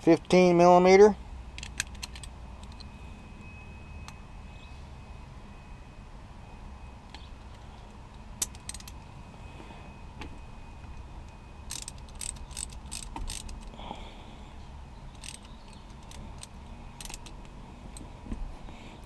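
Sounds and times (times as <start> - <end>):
ratchet wrench clicking: 11.7 - 13.8, 15.1 - 17.4.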